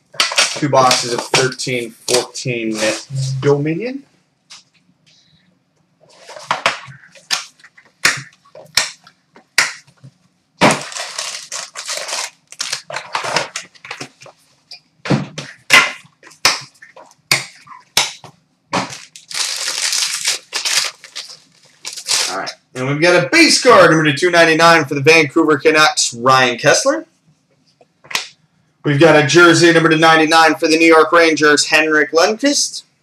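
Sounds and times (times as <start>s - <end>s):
packaging torn and crinkled: 10.6s - 13.8s, 18.9s - 22.5s.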